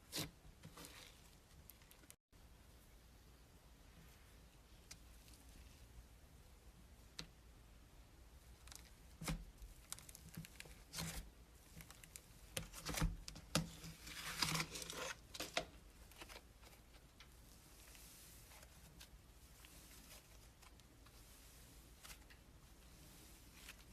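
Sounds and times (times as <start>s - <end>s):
crinkling and crackling handling: 0.1s - 2.2s, 8.5s - 23.9s.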